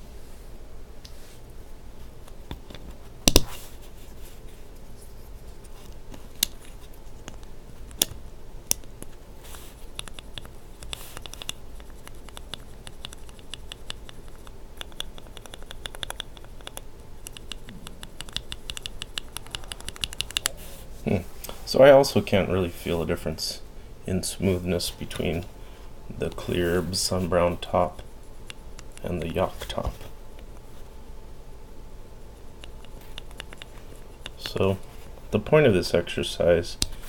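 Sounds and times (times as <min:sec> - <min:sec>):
keyboard switches clicking: 0:14.8 - 0:20.5.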